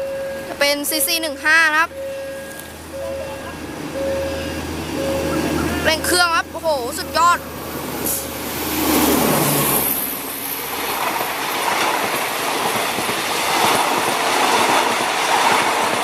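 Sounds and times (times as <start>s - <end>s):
locomotive humming low: 0.0s - 16.0s
train wheels clattering over rail joints: 10.6s - 16.0s.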